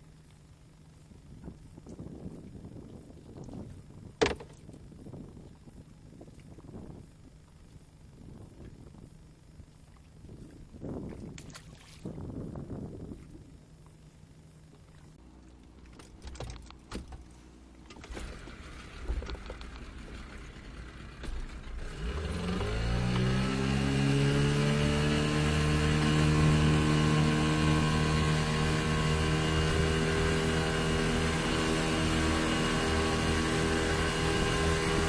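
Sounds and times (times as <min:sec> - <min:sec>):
motor starting and running: 0:17.8 - 0:35.0.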